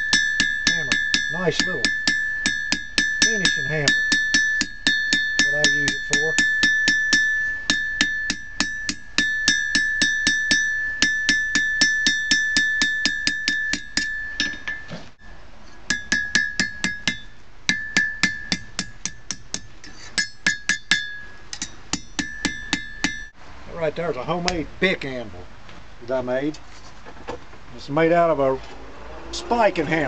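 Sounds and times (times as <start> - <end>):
hammer striking steel on anvil: 0.0 - 15.0, 15.9 - 23.4.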